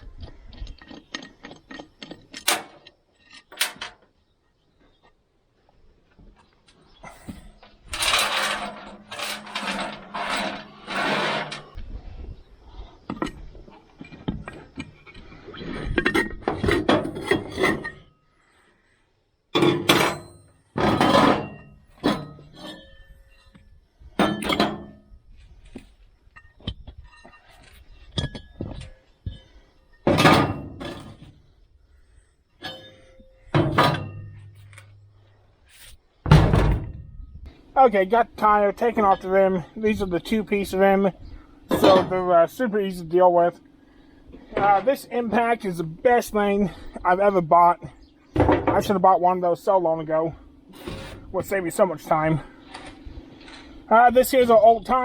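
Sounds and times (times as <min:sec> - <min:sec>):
metallic clanks and knocks: 0:00.5 - 0:04.0, 0:07.0 - 0:11.8, 0:13.1 - 0:18.1, 0:19.6 - 0:23.6, 0:24.2 - 0:25.1, 0:28.1 - 0:31.4, 0:32.6 - 0:35.3, 0:36.3 - 0:37.6, 0:41.7 - 0:42.3, 0:48.3 - 0:49.0.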